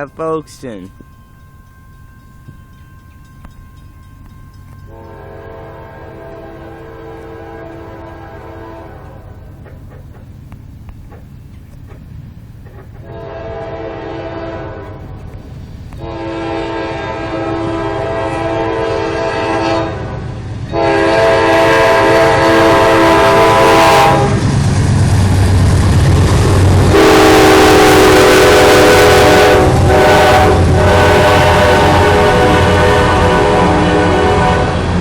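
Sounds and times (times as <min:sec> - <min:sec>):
diesel engine rumble: 0:00.0 - 0:16.4, 0:22.4 - 0:35.0
locomotive air horn blasts: 0:04.7 - 0:09.5, 0:13.0 - 0:15.2, 0:16.0 - 0:24.4, 0:26.9 - 0:35.0.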